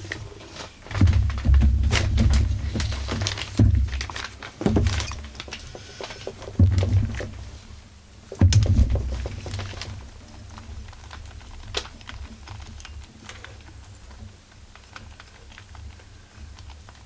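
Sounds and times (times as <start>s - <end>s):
metal parts and tools clattering: 0.9s - 7.4s
loud knocks: 0.9s - 7.7s, 8.3s - 10.0s.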